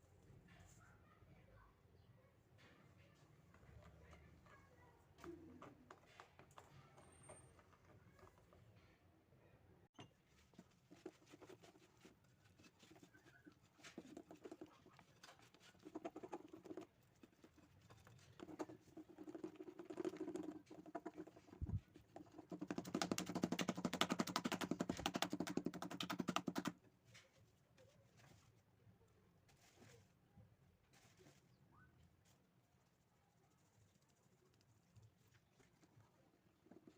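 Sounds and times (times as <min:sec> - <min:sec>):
batter mixing in a bowl: 0:10.0 - 0:27.1.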